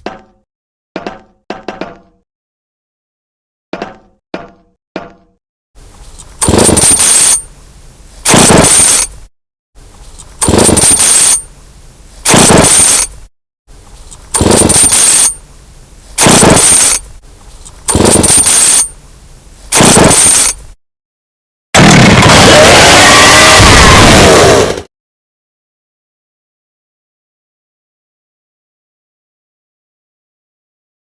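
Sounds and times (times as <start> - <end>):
chainsaw revving in rattling bursts: 14.3 - 15.2.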